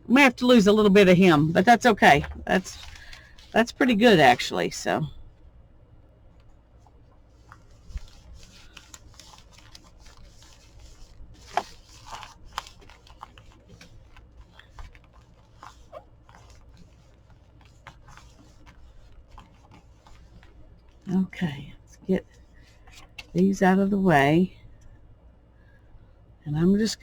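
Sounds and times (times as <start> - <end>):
paper rustling and crinkling: 1.3 - 4.6, 6.8 - 21.1.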